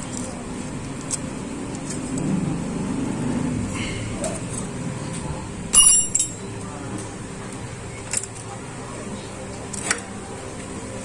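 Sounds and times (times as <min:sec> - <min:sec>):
metal tool clinking on metal: 0:05.7 - 0:06.4.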